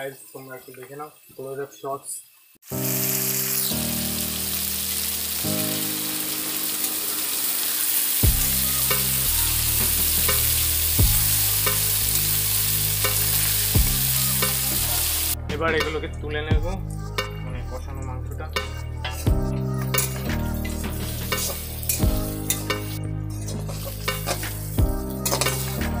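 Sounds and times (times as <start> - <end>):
chicken sizzling in a pan: 0.0 - 15.4, 19.9 - 26.0
background music with beat: 8.2 - 26.0.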